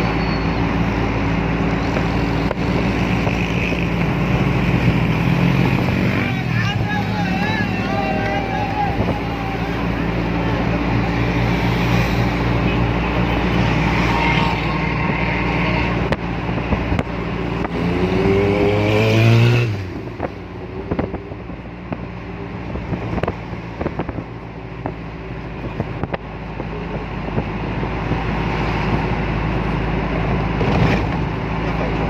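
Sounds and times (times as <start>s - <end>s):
vehicle engine revving: 0.8s - 24.2s.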